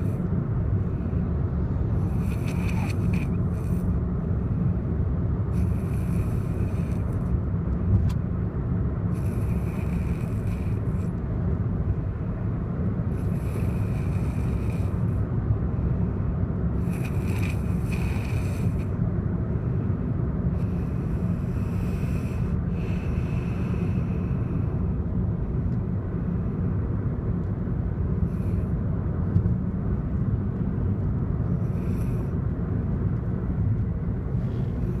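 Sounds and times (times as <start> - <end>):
steady low rumble: 0.0 - 35.0
person snoring: 2.0 - 3.9, 9.2 - 11.1, 13.2 - 15.1, 16.8 - 18.9.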